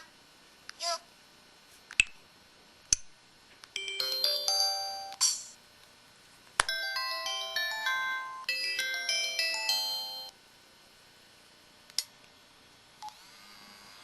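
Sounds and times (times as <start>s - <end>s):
electronic phone melody: 3.8s - 5.2s, 6.7s - 10.3s.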